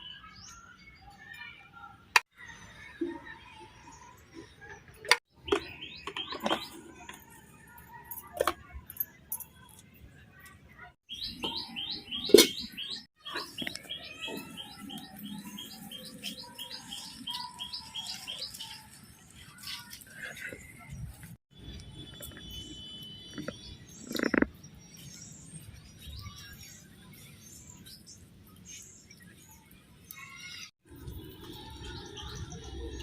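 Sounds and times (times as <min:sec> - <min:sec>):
small bird chirping: 0:22.1 - 0:28.0.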